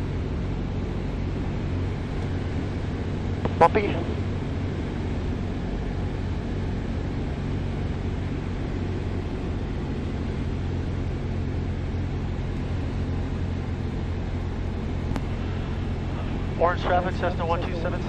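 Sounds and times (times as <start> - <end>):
aircraft engine drone: 0.0 - 18.0.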